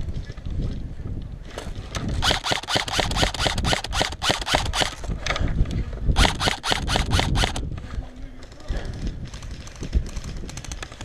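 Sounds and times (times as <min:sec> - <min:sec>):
airsoft rifle firing bursts: 0:02.2 - 0:05.0, 0:06.2 - 0:07.7.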